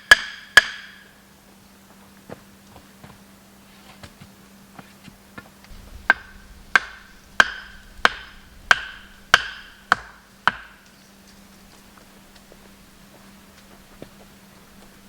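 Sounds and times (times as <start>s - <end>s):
chopping strikes on wood: 0.1s - 1.0s, 6.1s - 10.8s.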